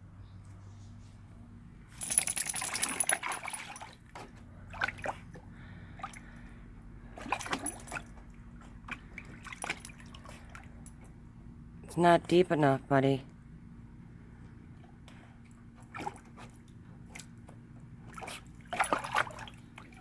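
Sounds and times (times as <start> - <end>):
puppy splashing water: 2.0 - 11.2, 14.8 - 20.0.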